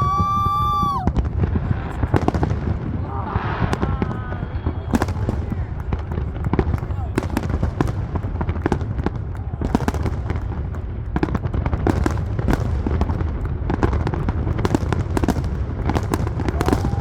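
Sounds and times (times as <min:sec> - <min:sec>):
fireworks bangs and crackles: 0:00.0 - 0:17.0.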